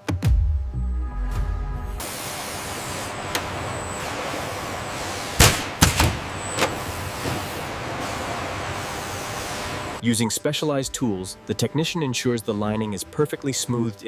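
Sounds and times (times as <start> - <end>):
steady hiss: 2.0 - 10.0.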